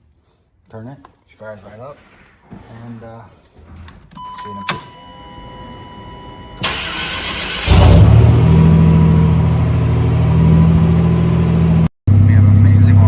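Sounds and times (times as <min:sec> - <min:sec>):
starter motor cranking: 0:06.6 - 0:08.6
engine idling: 0:06.6 - 0:13.0.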